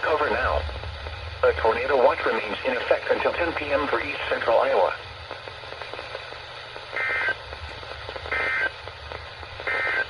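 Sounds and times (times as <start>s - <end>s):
faint radio hiss and hum: 0.0s - 10.0s
two-tone data tone warble: 7.0s - 7.4s, 8.3s - 8.8s, 9.6s - 10.0s.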